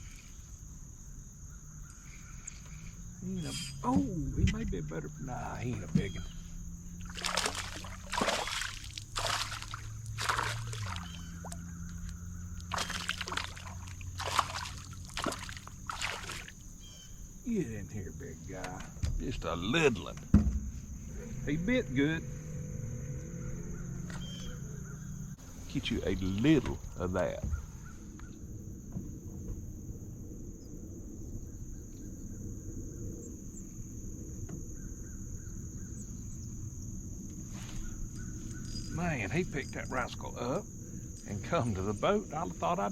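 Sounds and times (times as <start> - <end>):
insects droning: 0.0 - 42.9
fish splashing in water: 6.9 - 16.8.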